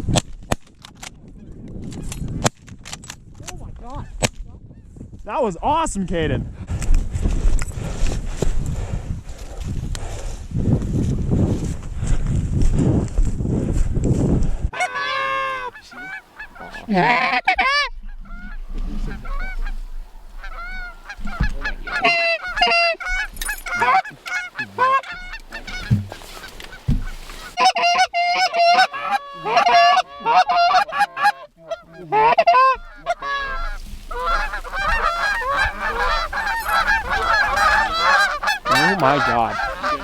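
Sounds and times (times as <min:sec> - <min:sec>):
geese honking: 0:14.8 - 0:40.0.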